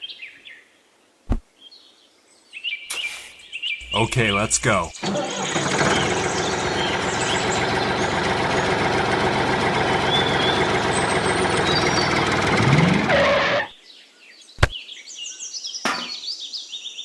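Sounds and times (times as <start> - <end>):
machine engine running: 3.8 - 13.7.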